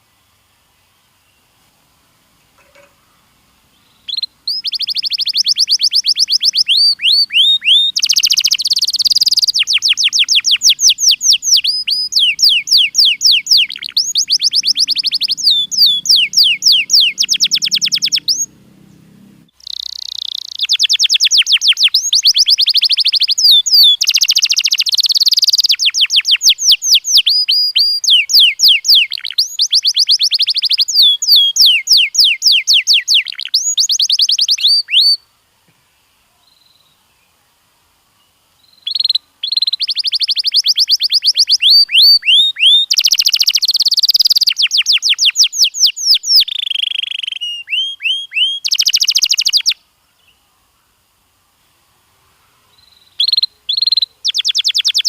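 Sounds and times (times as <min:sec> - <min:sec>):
canary singing trills: 0:02.6 - 0:35.2, 0:38.6 - 0:50.4, 0:52.7 - 0:55.0.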